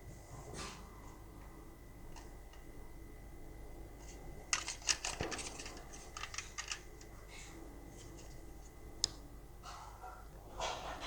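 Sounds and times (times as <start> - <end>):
toy truck clicking and tapping: 4.5 - 6.8.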